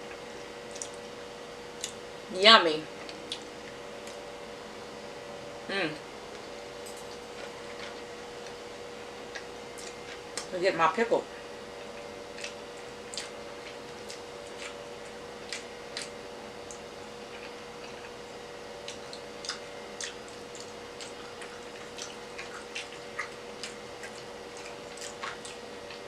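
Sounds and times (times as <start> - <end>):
faint steady hum: 0.0 - 26.0
chewing mouth clicks and smacks: 0.7 - 1.0, 9.3 - 10.5, 11.8 - 18.2, 18.8 - 26.0.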